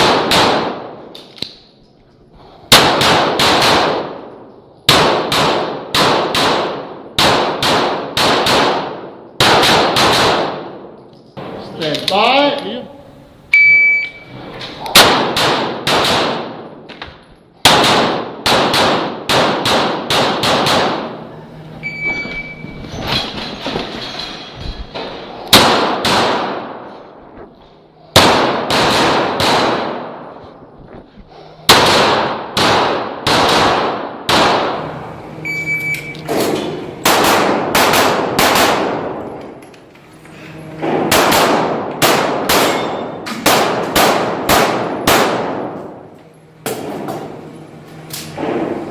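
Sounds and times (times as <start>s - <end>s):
pistol shots: 0.0s - 1.0s, 2.7s - 4.3s, 4.9s - 10.8s, 14.9s - 16.8s, 17.6s - 21.2s, 25.5s - 26.8s, 28.2s - 30.3s, 31.7s - 34.8s, 36.4s - 39.2s, 40.9s - 45.8s
metallic clangs on steel targets: 42.0s - 44.0s.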